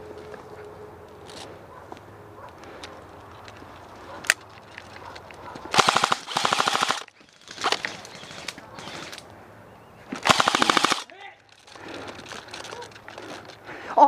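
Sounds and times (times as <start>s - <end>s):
airsoft guns firing bursts: 5.7s - 9.1s, 10.2s - 11.1s.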